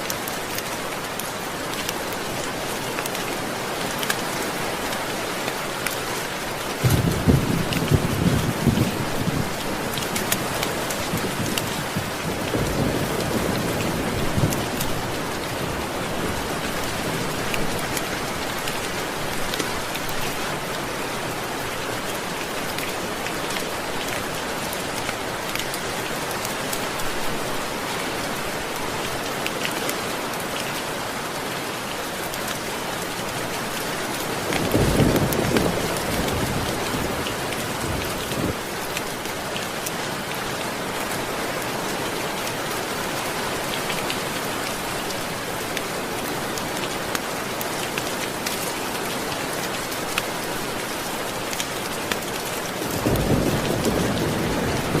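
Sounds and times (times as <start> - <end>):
steady rain falling: 0.0 - 55.0
thunder rumbling: 52.8 - 55.0.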